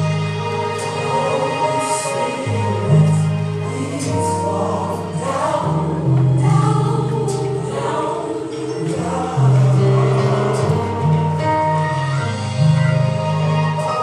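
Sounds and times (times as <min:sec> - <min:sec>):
choir singing gospel: 0:00.0 - 0:14.0
low bass notes: 0:08.9 - 0:14.0.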